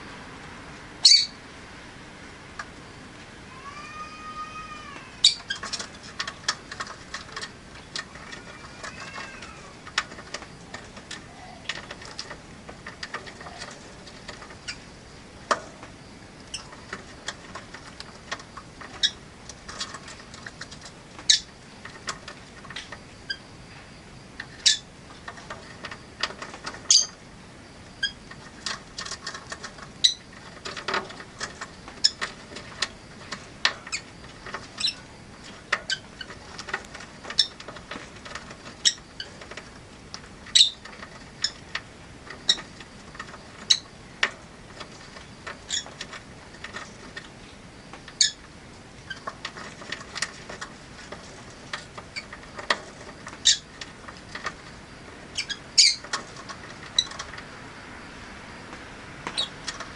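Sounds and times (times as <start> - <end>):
lovebirds chirping: 1.0 - 1.4, 5.2 - 6.5, 22.8 - 25.2, 26.8 - 27.2, 30.0 - 30.3, 31.6 - 36.5, 40.4 - 41.6, 47.4 - 49.3, 53.3 - 53.7, 55.3 - 56.2, 59.2 - 59.9.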